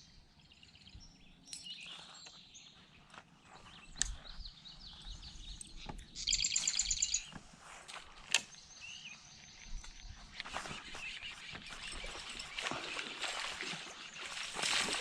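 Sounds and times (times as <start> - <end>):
songbird singing: 0.0 - 15.0
rapid bird trill: 6.1 - 7.3.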